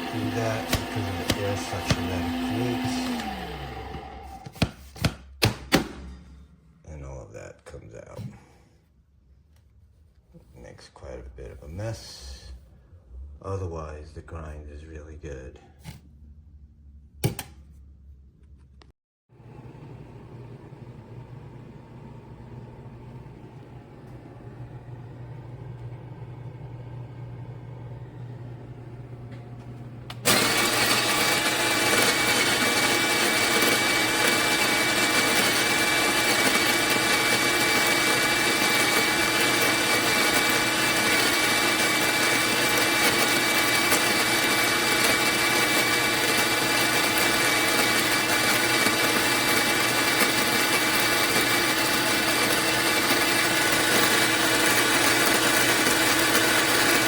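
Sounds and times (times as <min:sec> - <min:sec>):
coffee grinder motor whirring: 0:00.0 - 0:04.6, 0:30.1 - 0:57.0.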